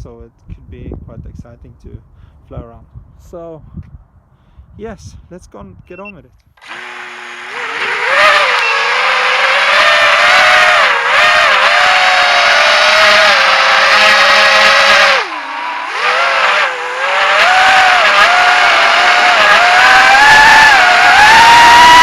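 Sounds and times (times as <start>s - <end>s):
drone motors whining: 6.6s - 22.0s.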